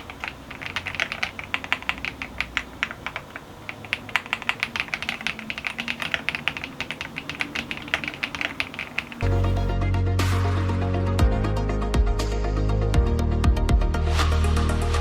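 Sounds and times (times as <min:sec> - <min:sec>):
mechanical keyboard typing: 0:00.0 - 0:09.7.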